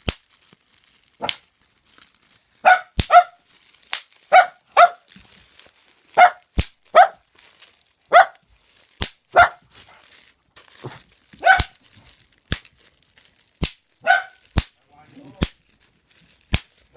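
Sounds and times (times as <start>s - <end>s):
bubble wrap popping: 0.0s - 16.9s
dog barking: 2.6s - 3.4s, 4.3s - 5.1s, 6.2s - 7.2s, 8.1s - 8.4s, 9.3s - 10.0s, 11.4s - 11.8s, 14.0s - 14.4s.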